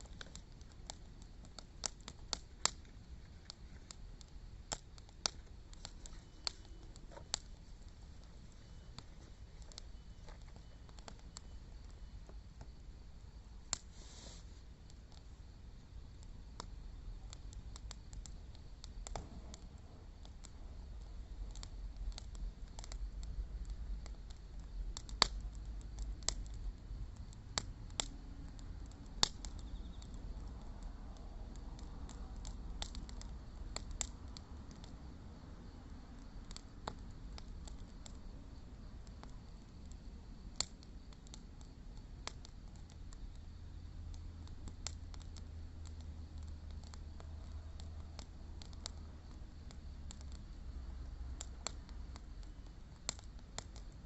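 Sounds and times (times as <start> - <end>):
wood fire crackling and popping: 0.0 - 54.0
insect chirring: 14.9 - 54.0.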